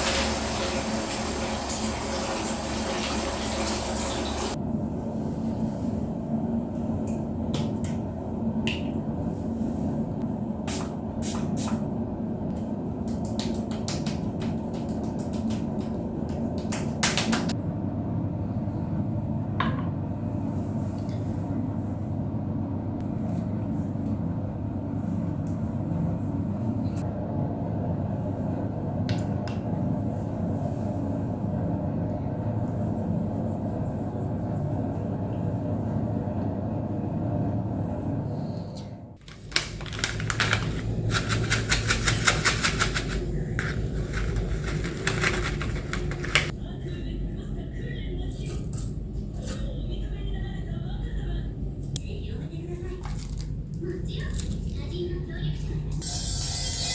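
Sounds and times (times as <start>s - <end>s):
water rushing from tap: 0.0s - 4.6s.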